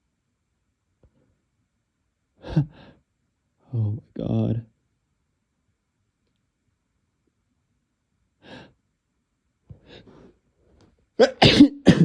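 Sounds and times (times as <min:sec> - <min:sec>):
person sneezing: 0:11.2 - 0:12.0.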